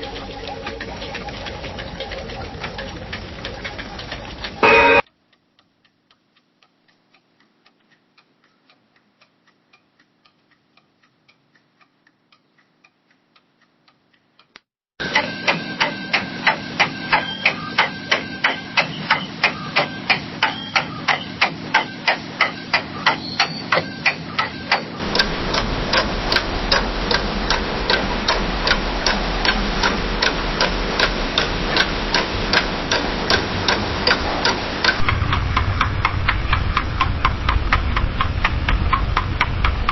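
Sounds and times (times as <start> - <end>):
steady low hum: 0.0 - 12.3, 25.0 - 39.9
clock ticking: 0.0 - 39.9
room noise: 6.9 - 39.9.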